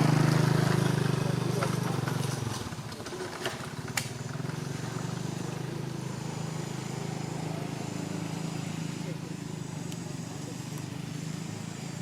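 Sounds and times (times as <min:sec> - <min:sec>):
small engine running: 0:00.0 - 0:12.0
sharp clicks: 0:03.9 - 0:04.2.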